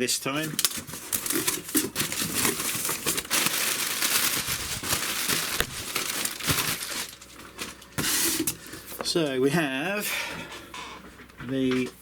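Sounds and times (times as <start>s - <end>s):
packaging crinkling and rustling: 0.3s - 8.6s.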